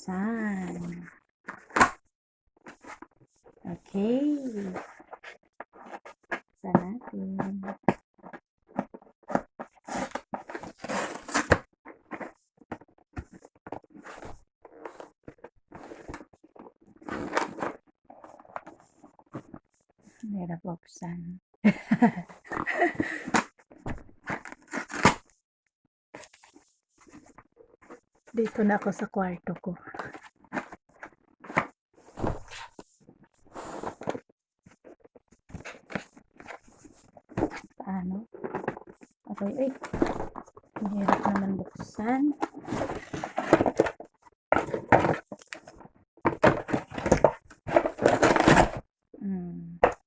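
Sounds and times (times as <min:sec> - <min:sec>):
packaging rustling and scraping: 0:00.5 - 0:01.9, 0:02.6 - 0:19.8, 0:22.3 - 0:25.3, 0:26.2 - 0:29.0, 0:29.9 - 0:48.9
packaging rustling and crinkling: 0:38.3 - 0:48.8.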